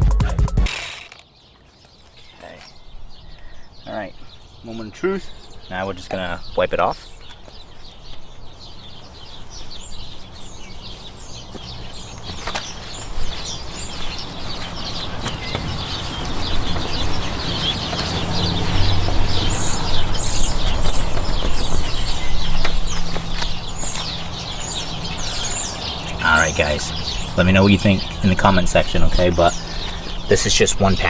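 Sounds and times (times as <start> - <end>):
small birds chirping: 0.0 - 31.0
cloth rubbing on plastic lens: 9.3 - 24.9.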